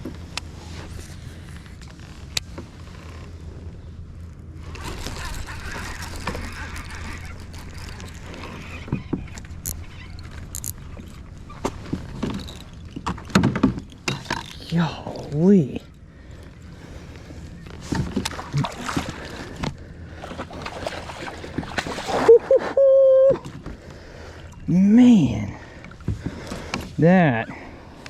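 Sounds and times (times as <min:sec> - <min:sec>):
steady low hum: 0:00.0 - 0:22.2.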